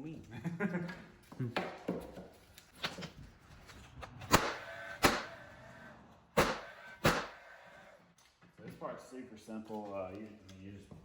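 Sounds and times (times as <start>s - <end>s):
nail gun firing: 4.3s - 5.4s, 6.4s - 7.5s.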